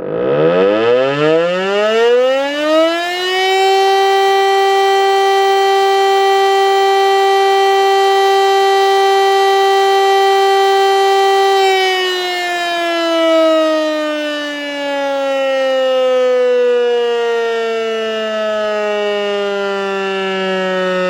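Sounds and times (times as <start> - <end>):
electric siren wailing: 0.0 - 21.0.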